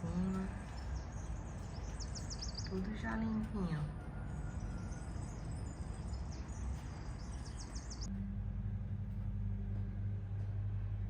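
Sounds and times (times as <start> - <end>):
birds chirping: 0.0 - 8.1
outdoor rumble: 0.0 - 11.0
steady low hum: 0.0 - 11.0.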